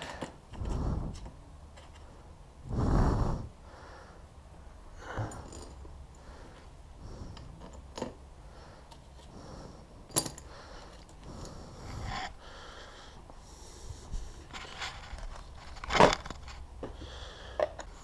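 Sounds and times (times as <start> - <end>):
metal tools clinking: 5.2 - 5.9, 10.1 - 11.2.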